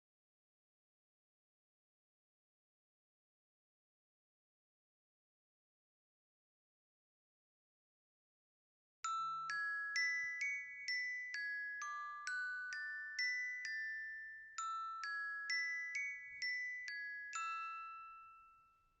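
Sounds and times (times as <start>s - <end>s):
timer alarm bell melody: 9.1s - 19.0s.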